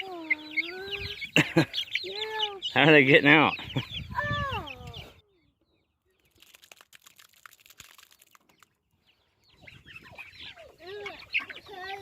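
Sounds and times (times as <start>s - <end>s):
chickens clucking: 0.0s - 5.2s, 8.4s - 12.0s.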